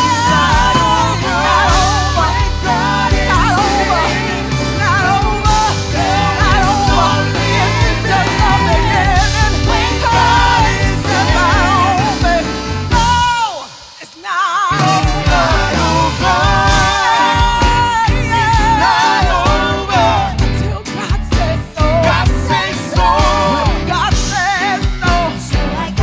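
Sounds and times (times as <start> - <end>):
gospel band playing: 0.0 - 26.0
singers with vibrato: 0.0 - 26.0.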